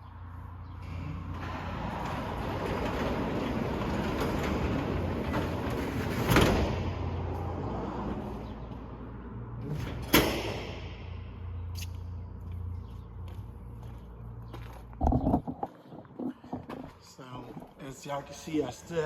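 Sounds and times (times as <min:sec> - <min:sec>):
door rumbling: 0:00.7 - 0:08.8, 0:15.0 - 0:17.0.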